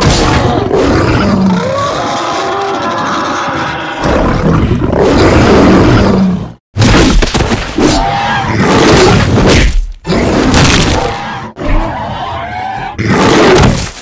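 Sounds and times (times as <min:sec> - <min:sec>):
big cats roaring and snarling: 0:00.0 - 0:14.0.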